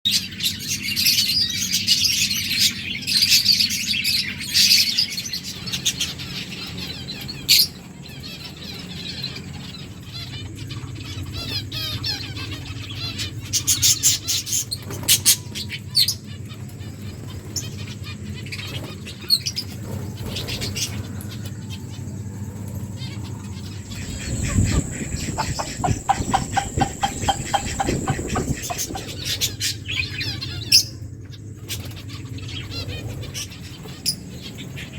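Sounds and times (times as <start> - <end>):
lovebirds chirping: 20.2 - 31.0.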